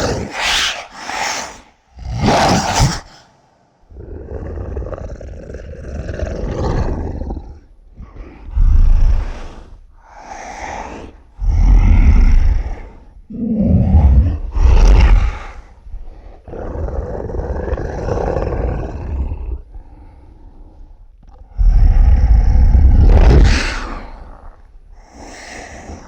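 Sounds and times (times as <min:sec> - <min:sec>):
monster growling breath: 0:03.0 - 0:26.0
monster snarling: 0:03.9 - 0:09.3, 0:11.4 - 0:20.3, 0:21.3 - 0:26.0.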